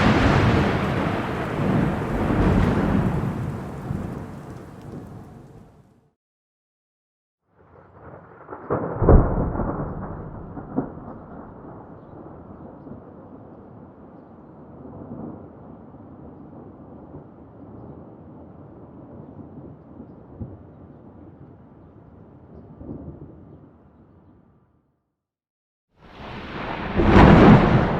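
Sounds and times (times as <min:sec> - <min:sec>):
thunder clap and rumble: 0:00.0 - 0:06.0, 0:07.7 - 0:13.8, 0:26.1 - 0:27.9.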